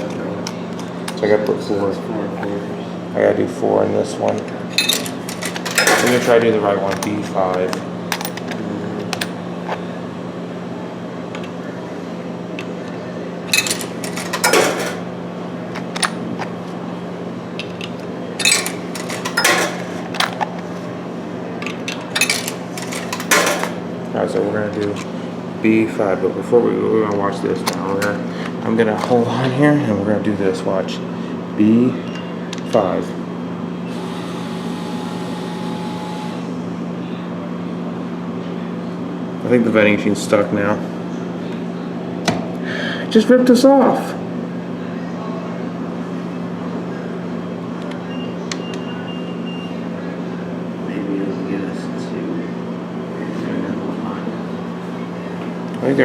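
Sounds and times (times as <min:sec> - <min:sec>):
coins clinking in vending machine: 0:04.5 - 0:09.4, 0:13.5 - 0:16.2, 0:17.6 - 0:20.9, 0:21.6 - 0:23.9.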